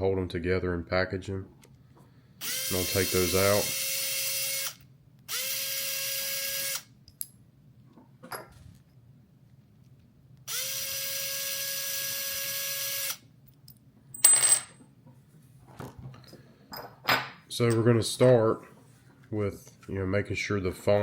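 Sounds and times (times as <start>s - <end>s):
electric screwdriver motor spinning: 2.4s - 6.9s, 10.5s - 13.2s.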